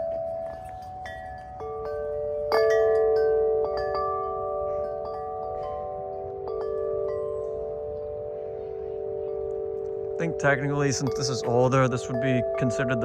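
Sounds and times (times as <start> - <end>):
wind chime ringing: 0.0 - 13.0.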